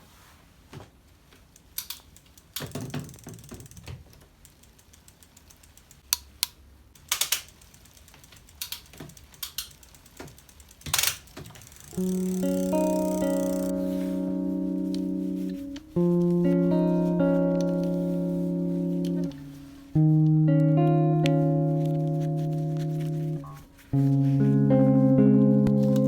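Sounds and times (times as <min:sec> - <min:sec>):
plucked guitar music: 0:12.0 - 0:26.0.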